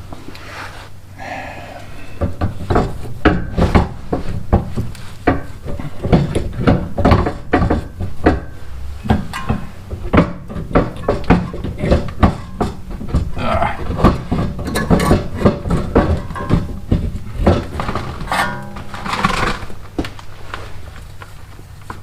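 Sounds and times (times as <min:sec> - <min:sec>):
hand tools clanking on metal: 0:05.2 - 0:19.4.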